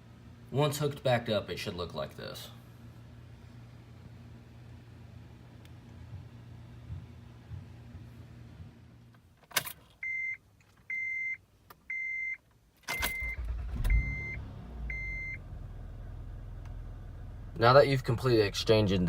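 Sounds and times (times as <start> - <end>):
car warning chime beeping: 10.0 - 15.4
car engine cranking and idling: 12.8 - 19.0.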